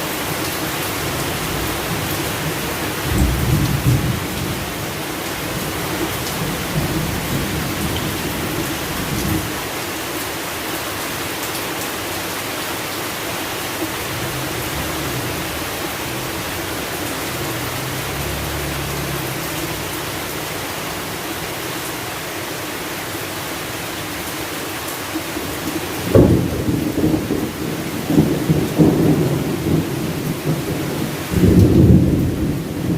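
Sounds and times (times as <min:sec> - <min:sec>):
steady rain: 0:00.0 - 0:32.9
thunder rumble: 0:03.0 - 0:04.9, 0:13.9 - 0:21.2, 0:26.0 - 0:32.9.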